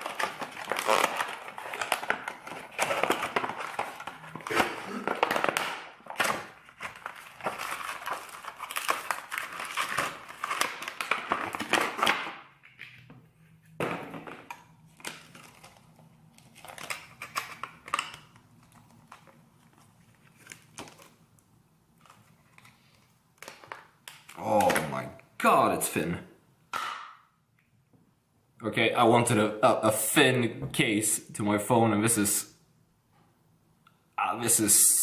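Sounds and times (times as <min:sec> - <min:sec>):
knife cutting packaging: 0:00.0 - 0:12.2
packaging crinkling and rustling: 0:00.0 - 0:13.0, 0:14.5 - 0:21.3, 0:21.9 - 0:25.1.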